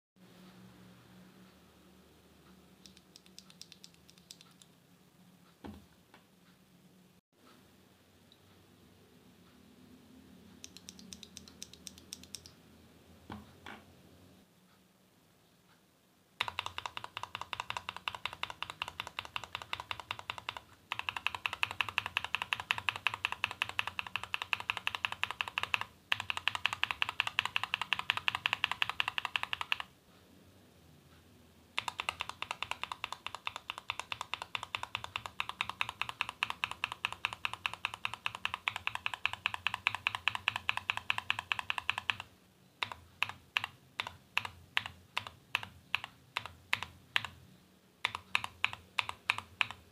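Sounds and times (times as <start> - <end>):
mechanical keyboard typing: 2.8 - 4.7, 10.6 - 12.6, 16.4 - 29.9, 31.7 - 47.4, 48.0 - 49.9.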